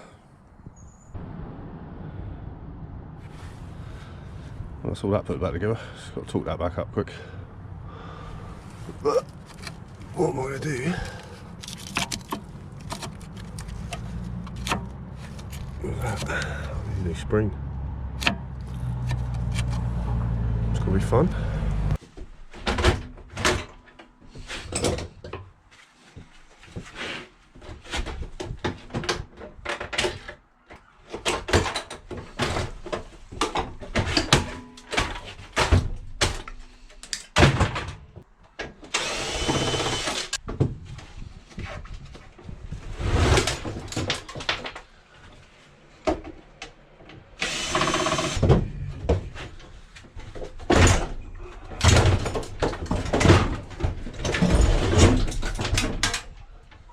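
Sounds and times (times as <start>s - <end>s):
power tool whining: 38.9s - 40.4s, 47.4s - 48.5s.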